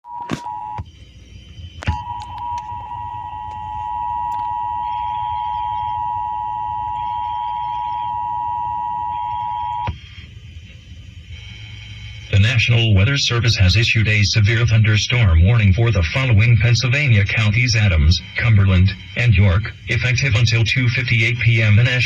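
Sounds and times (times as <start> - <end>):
emergency alert two-tone signal: 0.0 - 0.8, 1.8 - 10.0
road noise rumble: 12.3 - 22.0.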